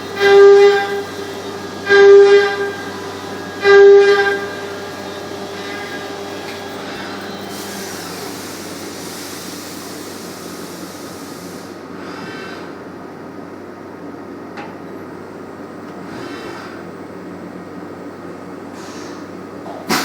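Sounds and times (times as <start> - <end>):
machine hum: 0.0 - 9.0
hiss: 4.4 - 12.7, 18.7 - 19.3.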